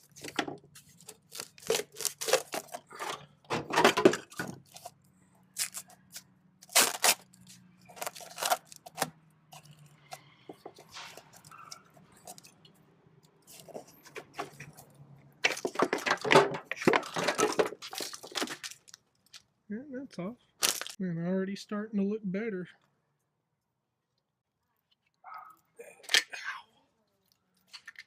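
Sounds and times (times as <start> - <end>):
plastic snapping and rustling: 0.0 - 5.0, 13.4 - 19.5, 20.6 - 21.0
hands pulling apart wiring: 0.0 - 19.5, 24.8 - 26.3, 27.2 - 28.0.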